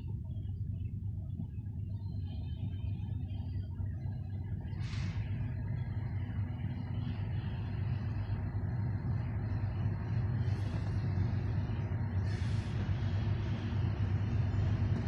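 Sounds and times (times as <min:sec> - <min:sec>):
locomotive diesel engines rumbling: 0:04.7 - 0:15.0.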